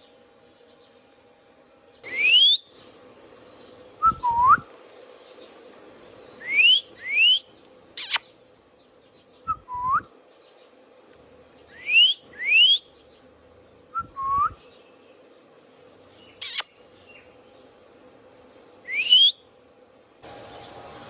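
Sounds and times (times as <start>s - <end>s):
parakeet whistling: 2.1s - 2.7s
parakeet shriek: 8.0s - 8.2s, 16.4s - 16.7s.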